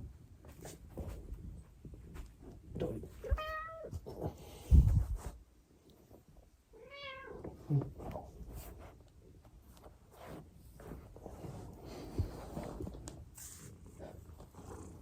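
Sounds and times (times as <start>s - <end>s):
cat meowing: 3.2s - 3.9s, 6.8s - 7.4s.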